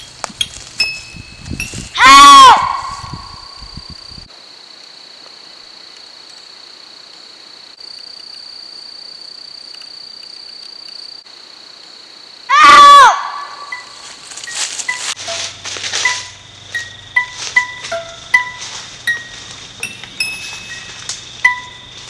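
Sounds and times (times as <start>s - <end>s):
insects chirring: 0.0s - 22.0s
loud scream: 1.9s - 3.6s, 12.5s - 13.8s.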